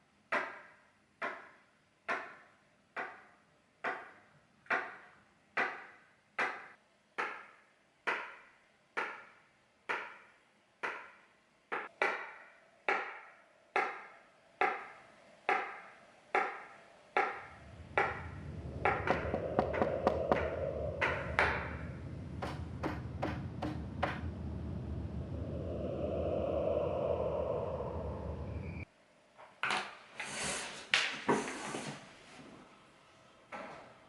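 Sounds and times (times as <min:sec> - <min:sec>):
low drone: 0:17.0 - 0:28.9.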